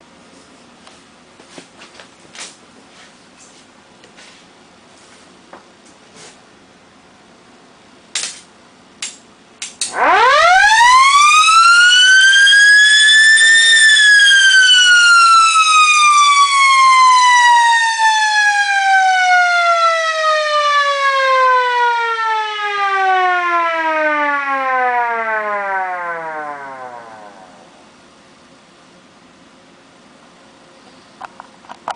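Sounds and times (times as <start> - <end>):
electromechanical siren wailing: 9.8 - 27.8.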